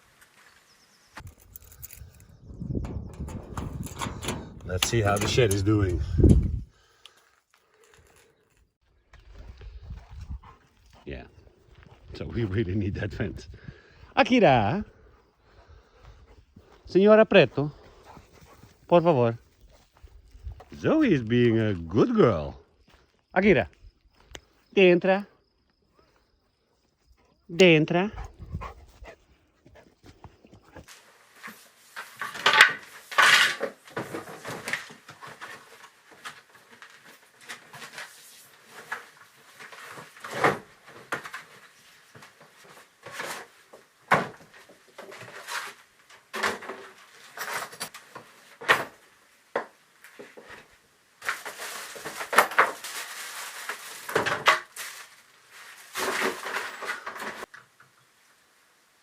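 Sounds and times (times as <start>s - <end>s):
hard objects clattering: 1.2s - 6.6s.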